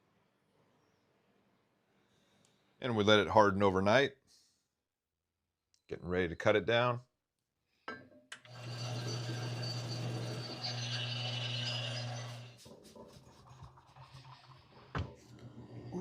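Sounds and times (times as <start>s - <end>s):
power tool grinding: 8.4s - 13.0s.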